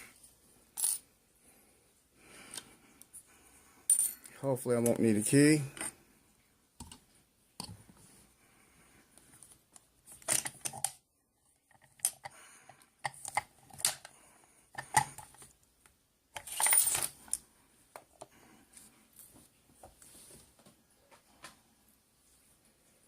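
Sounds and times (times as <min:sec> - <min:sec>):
padlock parts clicking and clinking: 0:10.1 - 0:11.0, 0:13.0 - 0:14.1, 0:16.4 - 0:17.4.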